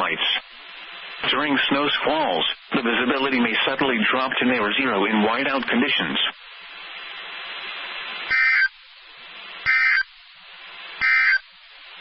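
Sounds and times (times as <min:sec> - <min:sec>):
radio hiss: 0:00.0 - 0:12.0
two-tone digital data bursts: 0:08.3 - 0:08.8, 0:09.7 - 0:10.1, 0:11.0 - 0:11.5.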